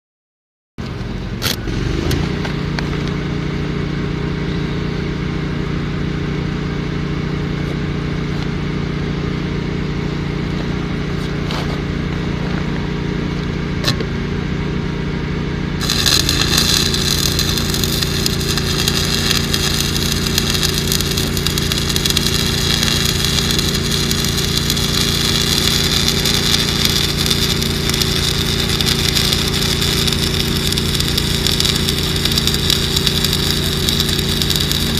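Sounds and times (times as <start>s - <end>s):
welding machine engine running: 0.9s - 34.9s
welding arc crackling and hissing: 15.8s - 34.9s.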